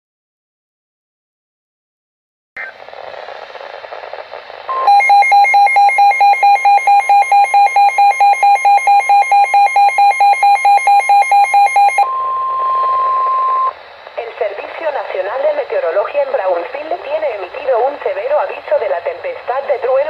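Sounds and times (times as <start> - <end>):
static hiss: 2.6 - 4.9, 12.9 - 20.0
rapidly pulsing alarm beeps: 4.7 - 13.7.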